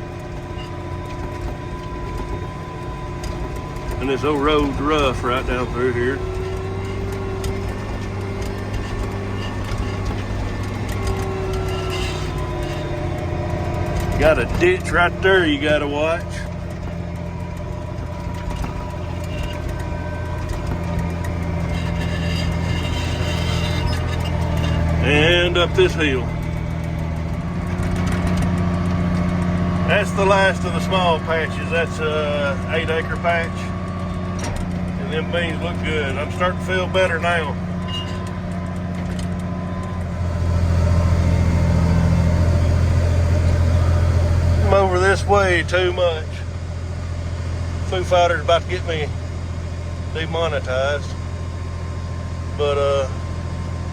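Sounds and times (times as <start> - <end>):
tractor diesel engine running: 0.0 - 53.9.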